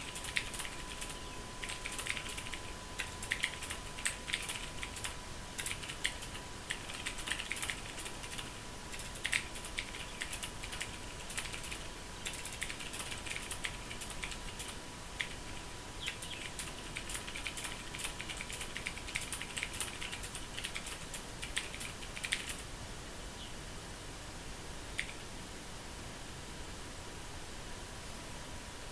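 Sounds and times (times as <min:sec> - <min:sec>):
faint steady high tone: 0:00.0 - 0:20.8
fast typing on mechanical keyboard: 0:00.0 - 0:22.6, 0:25.0 - 0:25.2.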